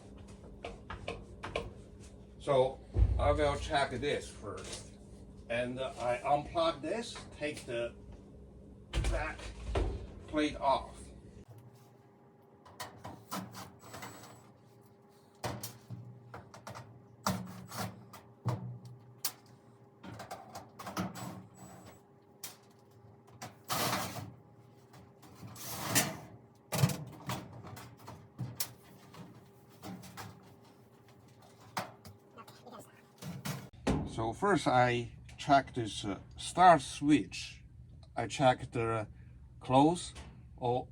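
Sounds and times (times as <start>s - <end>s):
sheet-metal panel scraping: 25.2s - 32.0s.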